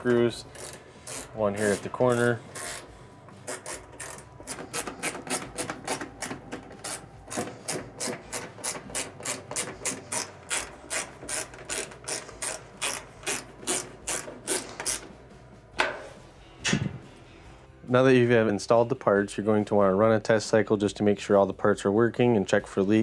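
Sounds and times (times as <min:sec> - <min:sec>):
ratchet clicking: 0:00.0 - 0:15.2.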